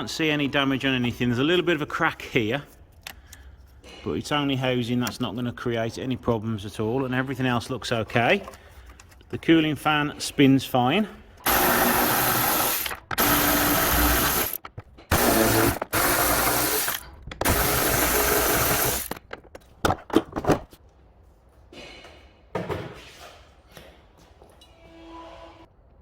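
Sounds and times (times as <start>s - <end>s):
power drill running: 11.4s - 19.2s.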